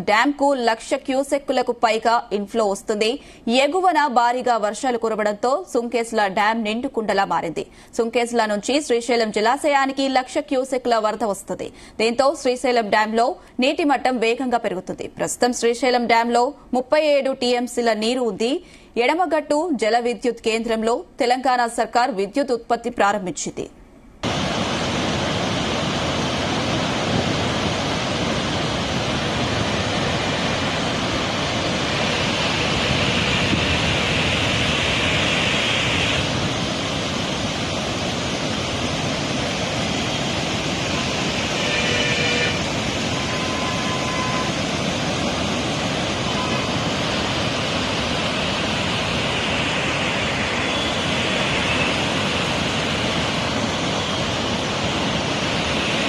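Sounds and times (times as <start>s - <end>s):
water rushing through spillway: 24.2s - 56.0s.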